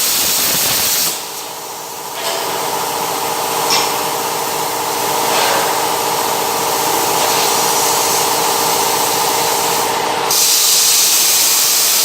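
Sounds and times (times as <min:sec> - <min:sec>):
welding hiss: 0:00.0 - 0:06.0, 0:06.7 - 0:12.0
machine hum: 0:00.0 - 0:10.3.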